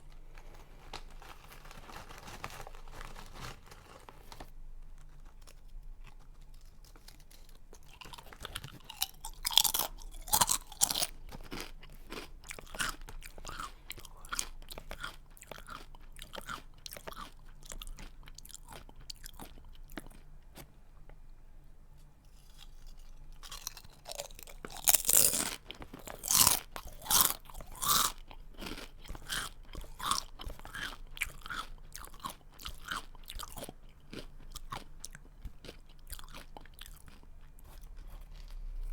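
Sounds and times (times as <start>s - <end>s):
person chewing crunchy snack: 5.0s - 20.7s, 22.3s - 38.9s.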